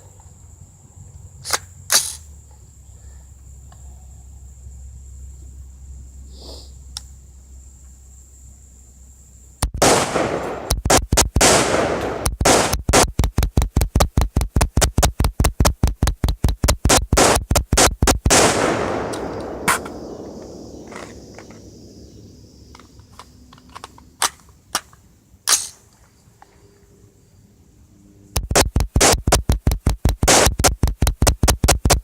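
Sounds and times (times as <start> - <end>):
rifle gunshots echoing: 9.8 - 13.0, 17.2 - 22.6.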